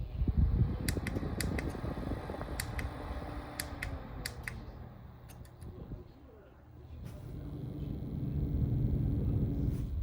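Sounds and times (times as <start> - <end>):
fan airflow buffeting microphone: 0.0 - 10.0
fan motor tone: 0.0 - 10.0
sharp clicks: 0.8 - 1.8, 2.6 - 2.9, 3.6 - 5.7.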